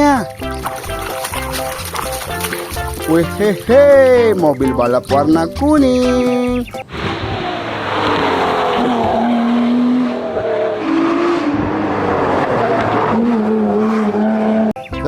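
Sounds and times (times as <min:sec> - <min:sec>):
tyre and road noise: 0:00.0 - 0:04.7, 0:06.4 - 0:14.9
race car engine: 0:06.8 - 0:14.8.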